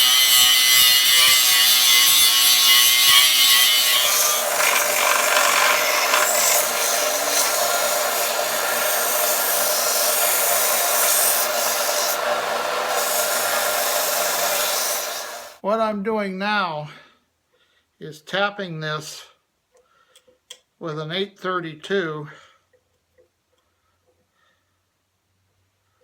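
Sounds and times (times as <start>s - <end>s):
angle grinder grinding steel: 0.0s - 15.6s.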